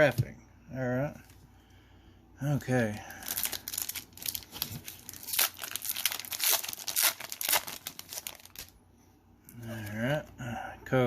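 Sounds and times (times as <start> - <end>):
foil wrapper tearing and crinkling: 3.2 - 8.7.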